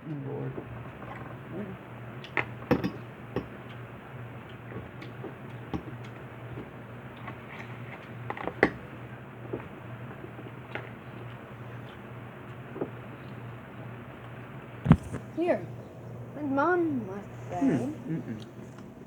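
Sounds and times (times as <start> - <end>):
tableware clicking: 2.2 - 3.6.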